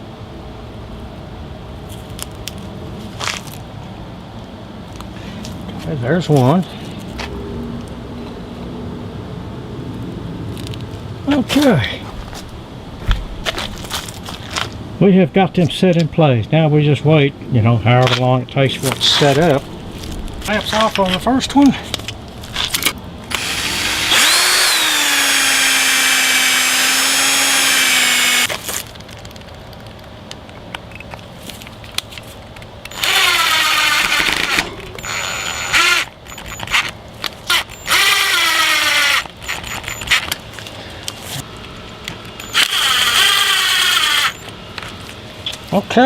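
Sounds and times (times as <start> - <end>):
electric drill running: 23.3 - 28.8, 32.9 - 36.8, 37.5 - 40.2, 42.4 - 44.5.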